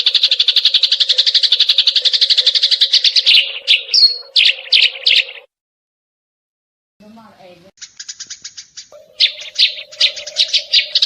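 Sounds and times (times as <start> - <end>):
bird whistle: 0.0 - 5.5, 8.0 - 11.0
sparrow chirping trill: 0.0 - 5.5, 7.8 - 11.0.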